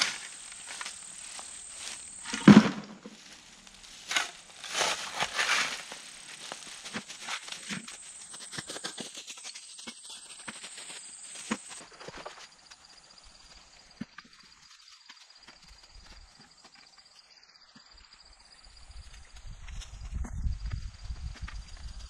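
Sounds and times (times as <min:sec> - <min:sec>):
footsteps crunching on rocky ground: 0:00.0 - 0:12.4
buckets and shovel rattling: 0:01.9 - 0:03.2.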